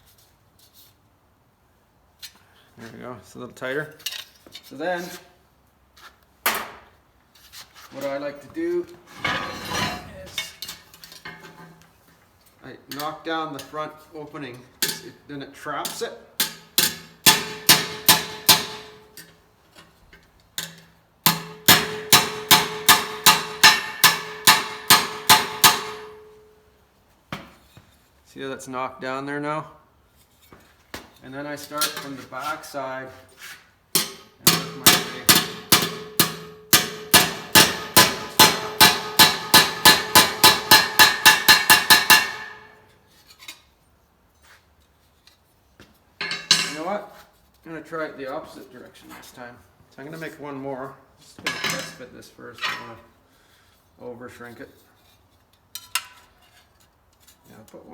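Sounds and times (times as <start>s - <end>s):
metal ringing: 9.1s - 10.6s, 34.0s - 42.8s
hammer blows on sheet metal: 34.0s - 42.7s.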